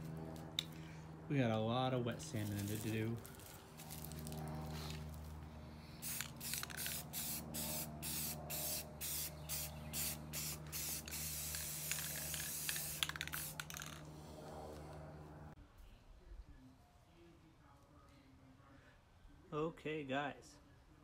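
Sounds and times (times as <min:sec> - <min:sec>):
spray paint hissing: 0:06.0 - 0:14.0.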